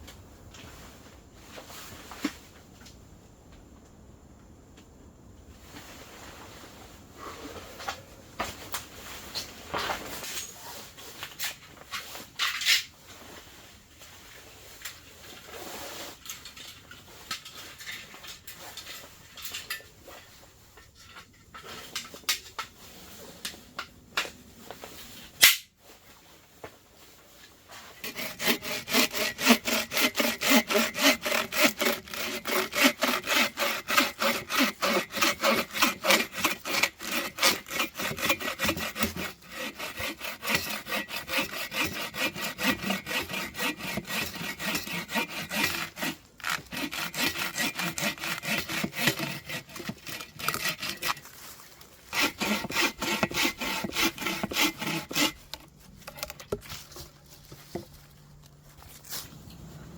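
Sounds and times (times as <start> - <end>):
rubbing and scraping: 27.0 - 59.8
hand saw cutting wood: 28.0 - 51.4, 52.1 - 57.9.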